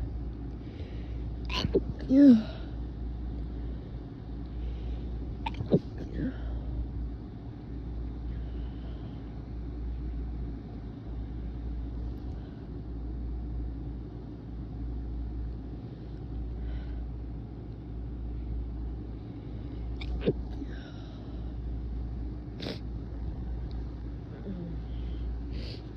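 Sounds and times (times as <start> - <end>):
stifled sneeze: 1.5 - 2.4.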